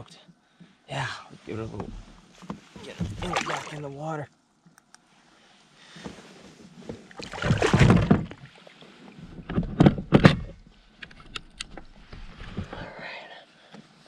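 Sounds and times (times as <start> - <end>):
fish splashing in water: 3.0 - 3.8, 7.2 - 8.4.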